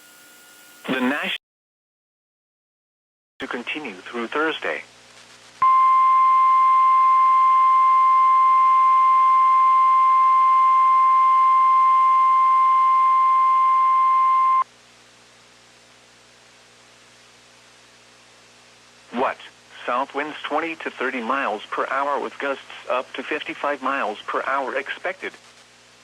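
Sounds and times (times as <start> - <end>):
faint radio hiss: 0.8 - 1.4, 3.4 - 5.6, 14.7 - 26.0
steady alarm tone: 5.6 - 14.6.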